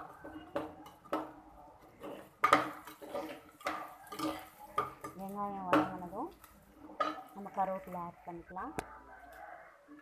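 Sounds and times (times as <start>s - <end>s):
utensil scraping a pan: 0.0s - 8.3s
onions frying: 0.0s - 8.8s.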